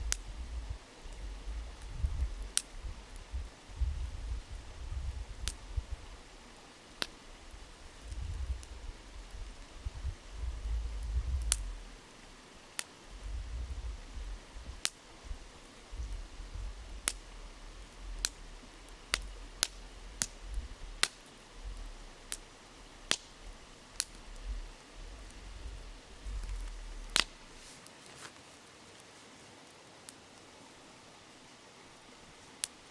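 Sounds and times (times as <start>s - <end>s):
low rumble: 0.0s - 6.6s, 7.2s - 27.6s
campfire crackling and popping: 0.0s - 28.2s
shallow river rushing: 4.5s - 27.6s.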